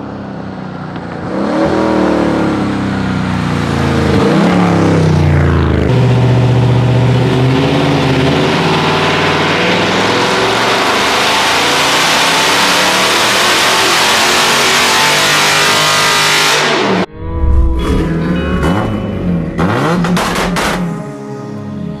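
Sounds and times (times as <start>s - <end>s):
car engine revving hard: 4.0s - 21.1s.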